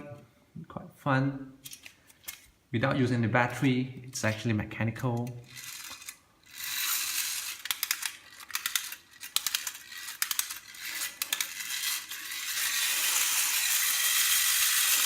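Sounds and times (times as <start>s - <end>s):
wind-up toy clicking and rattling: 5.4s - 15.0s.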